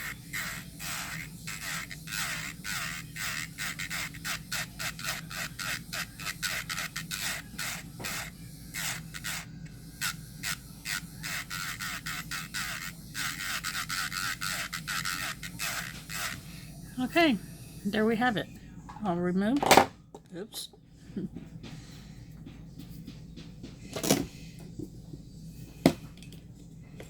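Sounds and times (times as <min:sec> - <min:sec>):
drill bit grinding a nail: 0:00.0 - 0:16.5
electric nail drill humming: 0:00.0 - 0:18.4.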